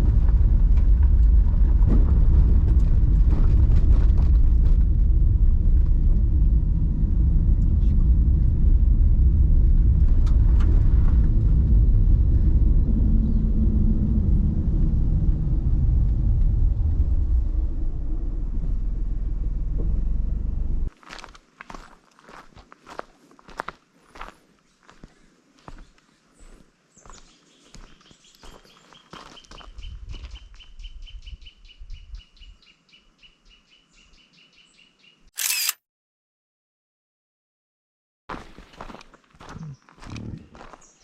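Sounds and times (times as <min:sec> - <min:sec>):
car road and engine rumble: 0:00.0 - 0:20.9.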